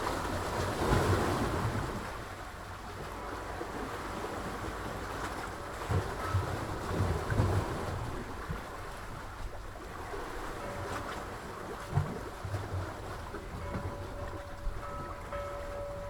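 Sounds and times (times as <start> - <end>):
wind buffeting microphone: 5.7 - 16.0.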